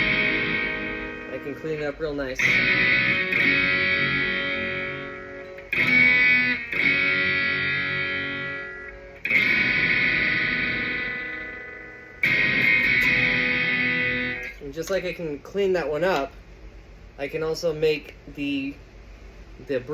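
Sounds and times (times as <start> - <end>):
overdriven electric guitar chords: 0.0 - 14.6.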